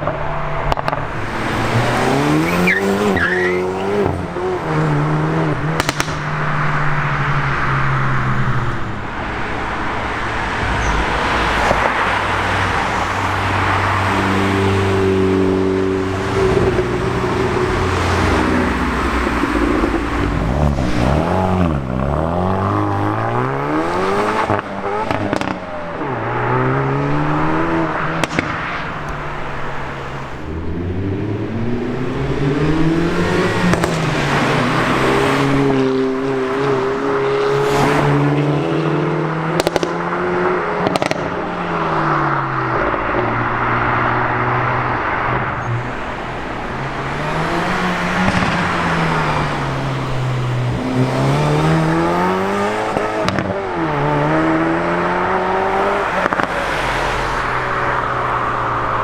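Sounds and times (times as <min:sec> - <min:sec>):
car engine revving: 0:00.0 - 0:59.0
exhaust crackles and pops: 0:05.4 - 0:14.2, 0:23.2 - 0:34.9, 0:39.5 - 0:40.0, 0:40.8 - 0:53.6, 0:56.0 - 0:59.0.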